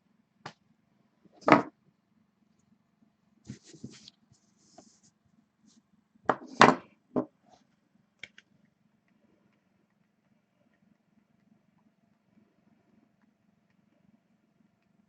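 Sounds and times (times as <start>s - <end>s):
faint steady hum: 0.0s - 15.0s.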